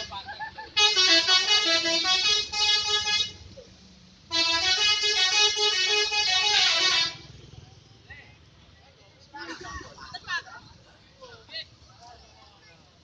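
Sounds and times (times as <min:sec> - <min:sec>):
multi-tone musical bus horn: 0:00.0 - 0:03.6, 0:04.3 - 0:07.4.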